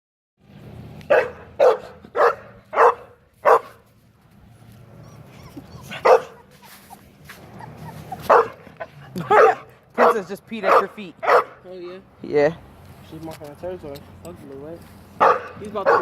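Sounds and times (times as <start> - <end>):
dog barking: 1.1 - 3.8, 5.9 - 6.4, 8.2 - 11.6, 15.2 - 16.0.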